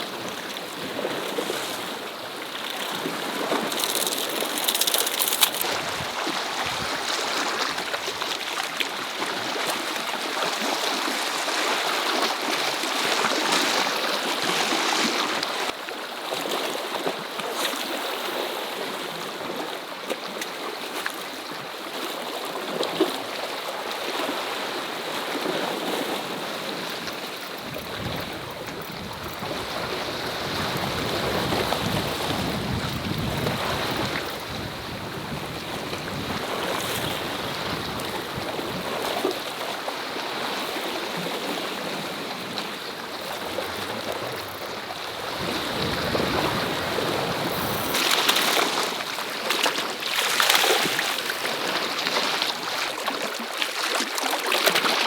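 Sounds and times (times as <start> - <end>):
waves against rocky shore: 0.0 - 15.8, 23.7 - 55.0.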